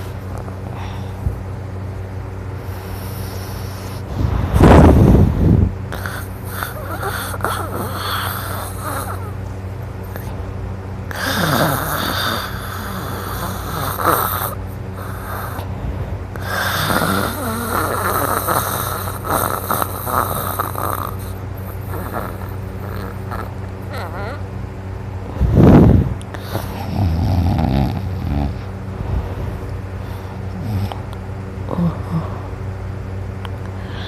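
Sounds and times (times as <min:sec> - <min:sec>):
steady low hum: 0:00.0 - 0:34.0
person snoring loudly: 0:02.8 - 0:09.4, 0:11.1 - 0:15.7, 0:16.4 - 0:24.4, 0:25.4 - 0:28.7, 0:29.5 - 0:31.1, 0:31.7 - 0:32.5.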